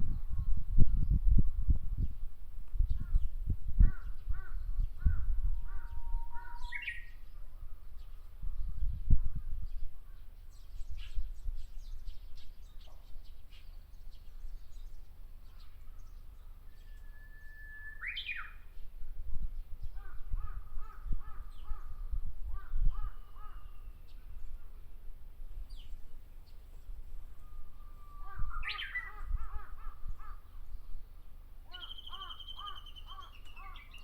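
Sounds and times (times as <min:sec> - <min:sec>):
birds calling short notes: 0:02.8 - 0:08.3, 0:09.7 - 0:19.0, 0:19.8 - 0:24.9, 0:25.6 - 0:34.0
bird singing whistle and flourish: 0:05.9 - 0:07.2, 0:16.0 - 0:18.8, 0:27.4 - 0:29.4, 0:31.8 - 0:34.0.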